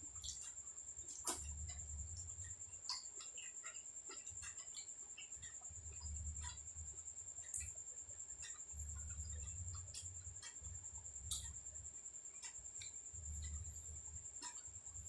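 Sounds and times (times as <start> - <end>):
muffled chewing: 0.1 - 15.0.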